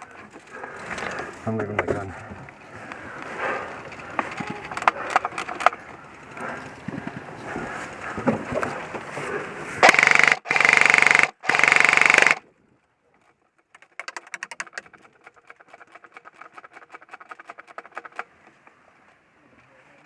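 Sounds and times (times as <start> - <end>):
airsoft gunfire rattle: 9.8 - 12.4, 13.7 - 18.3.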